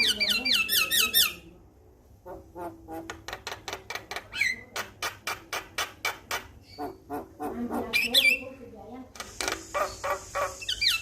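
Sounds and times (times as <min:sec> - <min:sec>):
bird harsh clicking calls: 0:02.9 - 0:08.5, 0:09.1 - 0:11.0.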